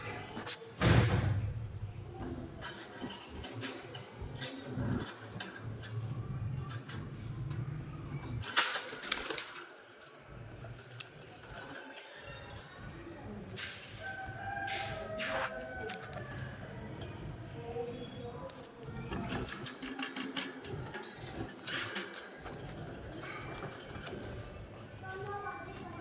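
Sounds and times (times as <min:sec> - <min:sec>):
small clicks and scratches: 0:02.5 - 0:08.4, 0:14.6 - 0:17.3
parrots flapping wings: 0:08.4 - 0:09.9.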